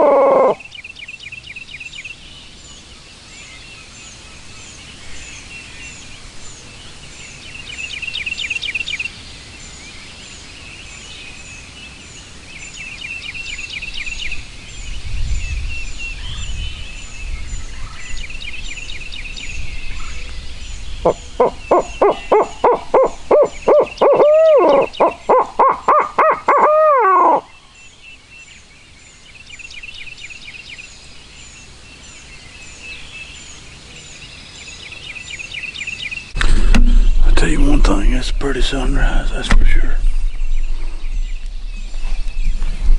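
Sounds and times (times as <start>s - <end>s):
owl hooting: 0.0s - 0.6s, 21.0s - 27.6s
songbirds trilling: 0.0s - 42.9s.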